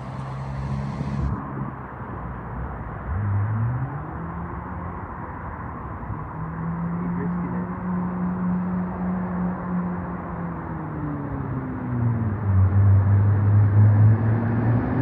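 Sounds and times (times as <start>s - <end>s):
steady rushing noise: 0.0s - 1.4s
vehicle engine running: 0.0s - 1.4s.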